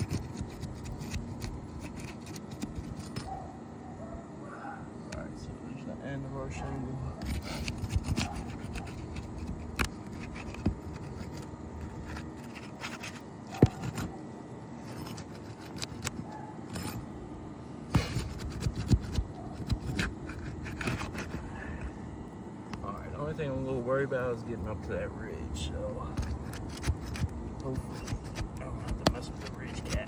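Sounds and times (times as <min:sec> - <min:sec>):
sharp clicks and knocks: 0:26.1 - 0:30.0.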